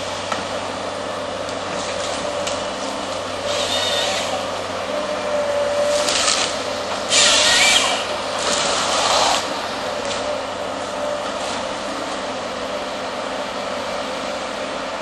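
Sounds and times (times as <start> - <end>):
excavator diesel engine running: 0.0 - 15.0
harvester head mechanical rushing: 5.9 - 10.2.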